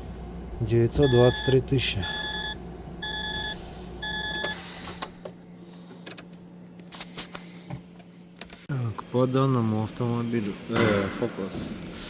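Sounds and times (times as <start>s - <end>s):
faint steady hum: 0.0s - 10.6s
electronic warning beeps: 0.9s - 5.0s.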